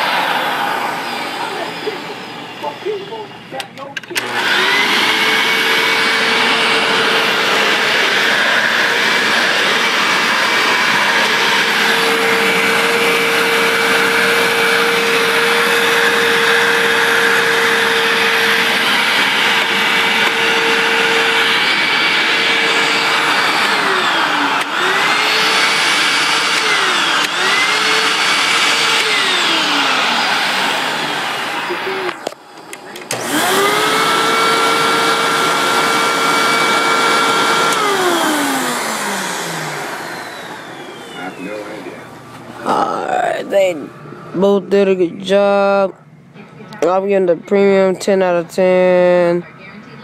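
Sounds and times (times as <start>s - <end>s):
vacuum cleaner running: 0.0s - 50.0s.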